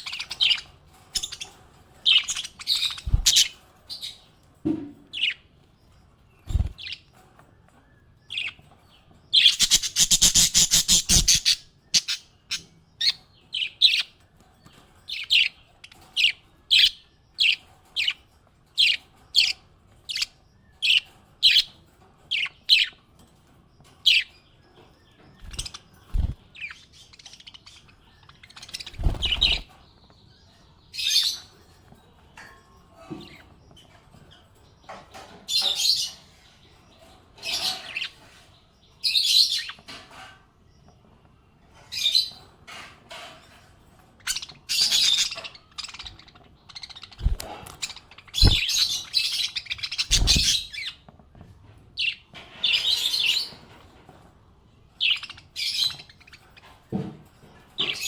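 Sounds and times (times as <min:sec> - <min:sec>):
parrot chattering and chirping: 0:09.4 - 0:12.3.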